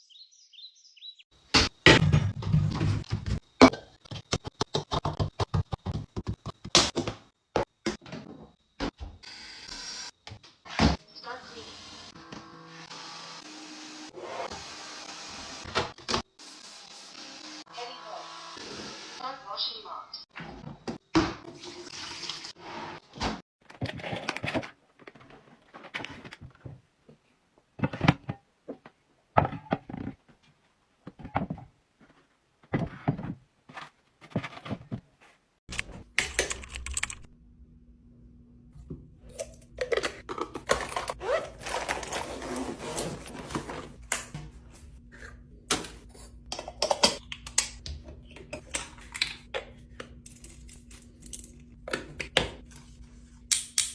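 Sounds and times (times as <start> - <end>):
household items knocking and clicking: 1.5 - 9.0.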